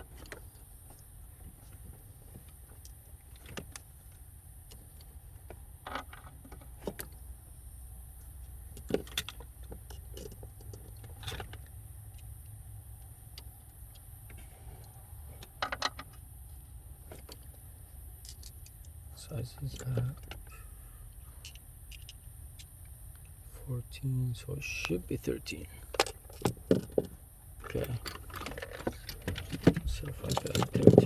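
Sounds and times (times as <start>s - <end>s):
steady low rumble: 28.9s - 31.0s.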